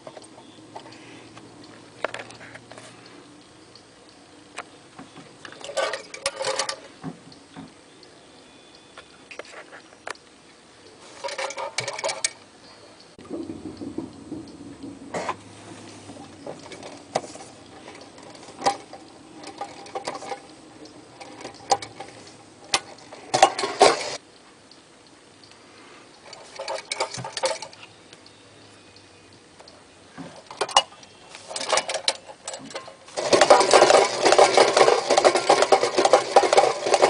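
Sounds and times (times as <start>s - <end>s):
low running hum: 0.0s - 37.0s
wind-up toy clicking and clattering: 16.4s - 24.2s, 26.2s - 27.9s, 31.5s - 37.0s.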